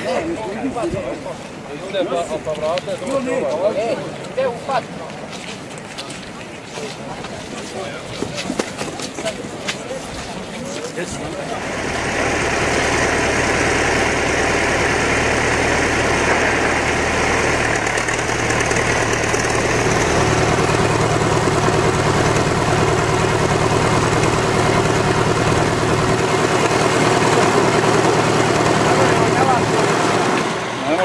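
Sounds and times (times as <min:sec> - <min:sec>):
outboard motor running: 0:11.6 - 0:31.0.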